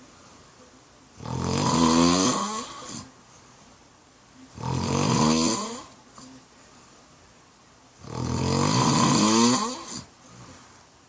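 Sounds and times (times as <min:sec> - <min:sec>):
man snoring loudly: 0:01.2 - 0:03.0, 0:04.6 - 0:05.9, 0:08.0 - 0:10.1.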